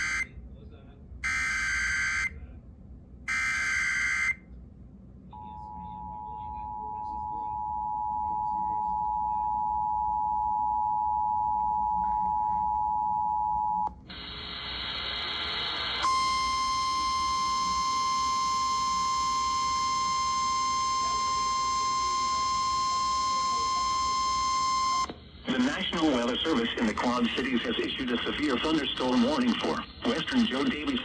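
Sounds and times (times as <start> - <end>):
radio static: 14.1 - 16.0, 25.1 - 31.0.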